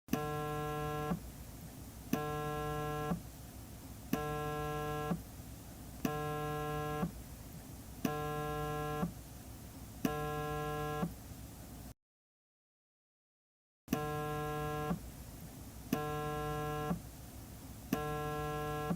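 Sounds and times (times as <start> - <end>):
phone vibrating buzz: 0.1 - 1.2, 2.1 - 3.2, 4.1 - 5.2, 6.0 - 7.1, 8.0 - 9.2, 10.0 - 11.2, 13.9 - 15.0, 15.9 - 17.0, 17.9 - 18.9.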